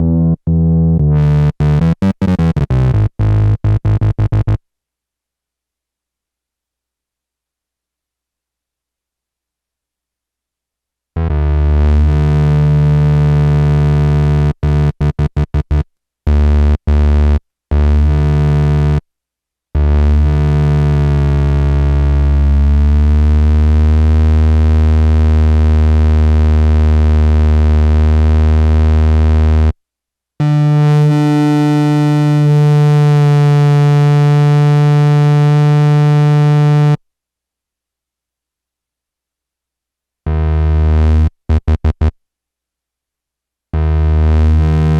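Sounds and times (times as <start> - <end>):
buzzy analogue synthesizer notes: 0.0 - 4.6, 11.2 - 19.0, 19.8 - 29.7, 30.4 - 37.0, 40.3 - 42.2, 43.8 - 44.9.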